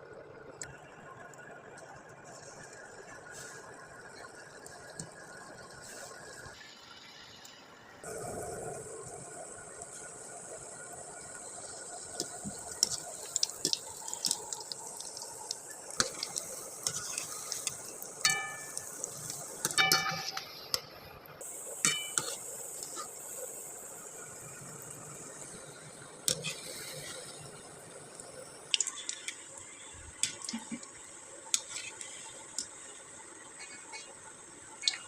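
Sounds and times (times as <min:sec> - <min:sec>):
metal utensils clinking on steel: 0:16.1 - 0:20.6, 0:21.8 - 0:23.0
small clicks: 0:28.7 - 0:32.8.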